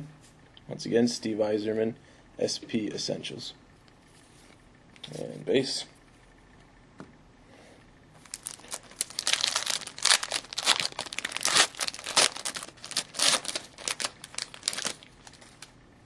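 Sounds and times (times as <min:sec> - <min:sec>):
card pack wrapper crinkling: 0:08.2 - 0:15.7.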